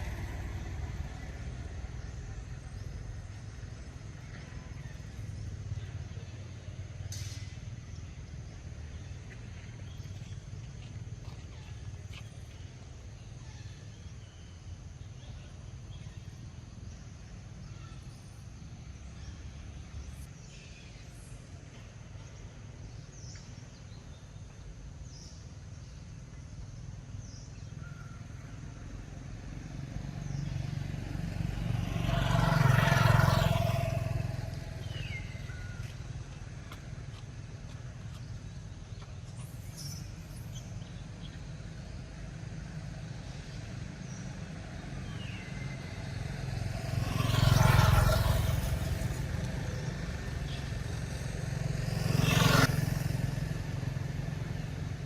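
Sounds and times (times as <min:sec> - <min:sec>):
vehicle passing by: 0:00.0 - 0:12.5, 0:28.7 - 0:40.9, 0:42.3 - 0:55.0.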